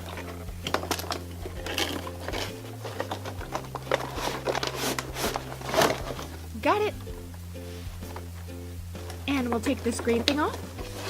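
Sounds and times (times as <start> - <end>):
packaging rustling and scraping: 0.0 - 6.5.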